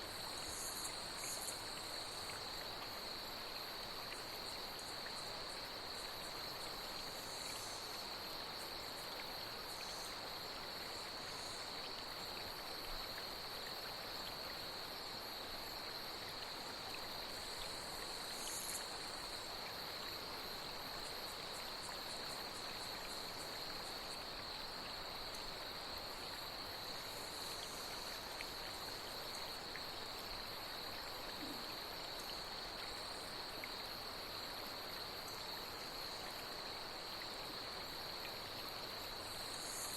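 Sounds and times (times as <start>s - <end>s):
higher insect chirps: 0.0s - 2.9s, 16.7s - 37.3s, 37.9s - 39.9s
flowing water hiss: 0.0s - 39.9s
night insects droning: 0.0s - 39.9s.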